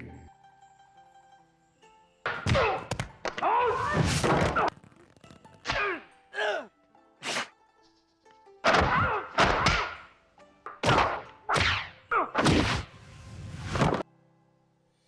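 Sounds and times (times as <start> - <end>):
punch and kick impacts: 2.3 - 4.7, 8.7 - 10.0, 10.8 - 12.9.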